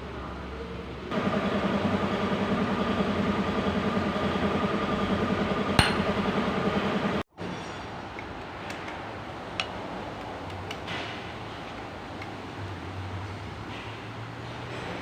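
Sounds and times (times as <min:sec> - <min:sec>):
engine running with metallic knock: 0:01.1 - 0:07.2.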